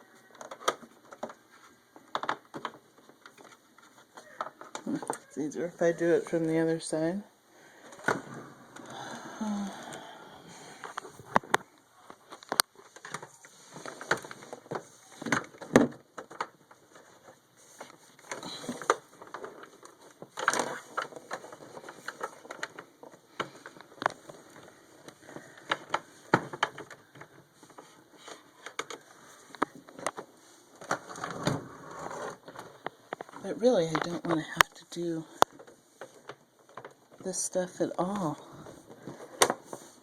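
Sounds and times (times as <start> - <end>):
clicks knocks and rustles: 10.8 - 34.7.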